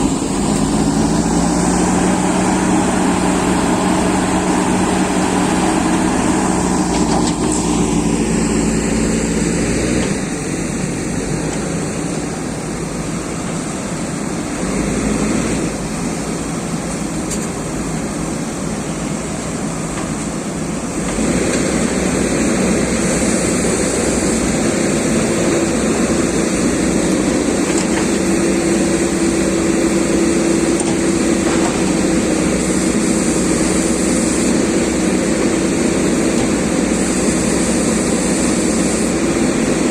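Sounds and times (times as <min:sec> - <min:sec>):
excavator diesel engine: 0:00.0 - 0:39.9.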